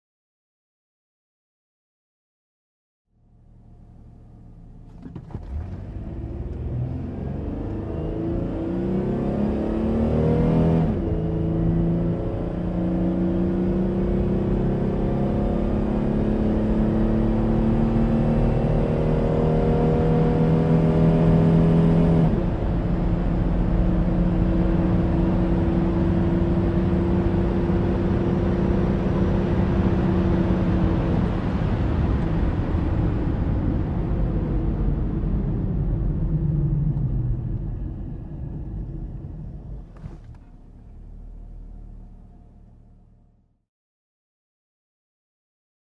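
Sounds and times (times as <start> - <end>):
road rumble: 3.1 - 15.2, 19.4 - 43.5
car engine accelerating: 3.2 - 43.6.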